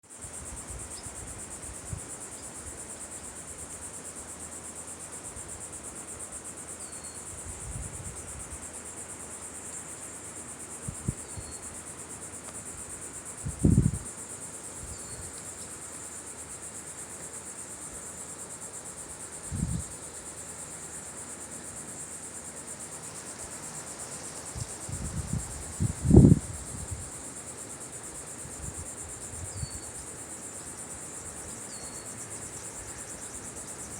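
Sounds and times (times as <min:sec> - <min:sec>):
insects chorus: 0:00.0 - 0:33.9.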